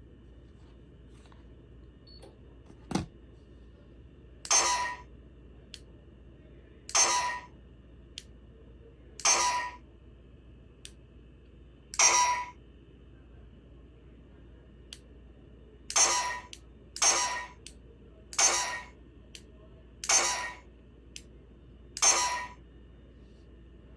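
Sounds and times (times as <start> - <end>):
lamp box sound effect: 4.5 - 5.0, 6.9 - 7.5, 9.2 - 9.8, 12.0 - 12.6, 15.9 - 17.7, 18.4 - 18.9, 20.0 - 20.6, 22.0 - 22.6.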